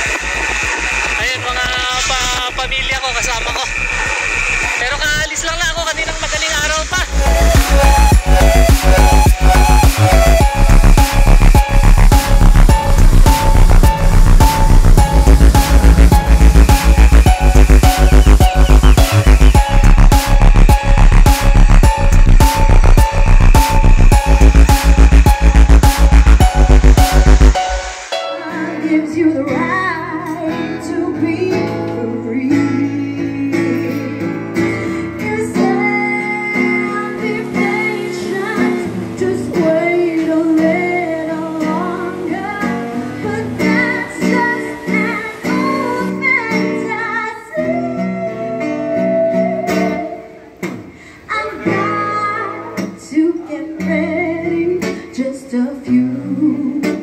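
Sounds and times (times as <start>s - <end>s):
woman singing: 28.2s - 34.4s, 35.0s - 50.3s, 51.3s - 57.0s
strummed acoustic guitar: 28.5s - 55.3s.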